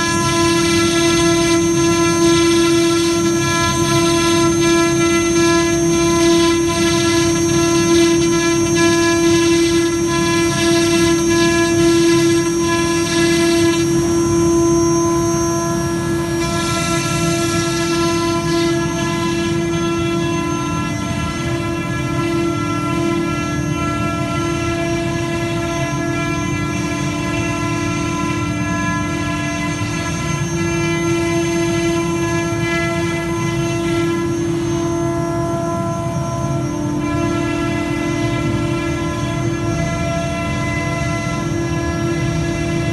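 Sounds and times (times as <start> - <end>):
cutter rasping through chipboard: 0.0 - 20.6
router spindle whine: 0.0 - 42.9.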